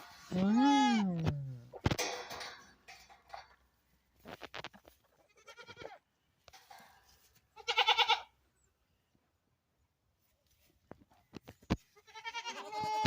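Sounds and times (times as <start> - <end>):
rustling or scuffling: 0.0 - 7.6, 10.2 - 13.0
farm animal bleating: 0.3 - 1.7, 5.0 - 6.1, 7.5 - 8.4, 11.9 - 13.0.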